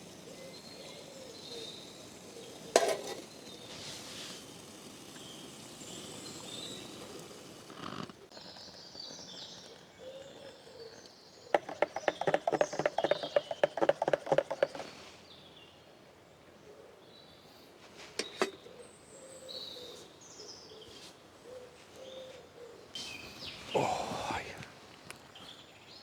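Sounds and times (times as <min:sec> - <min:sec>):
birds chirping faintly: 0:00.0 - 0:26.0
fast sharp clicks: 0:11.5 - 0:15.0.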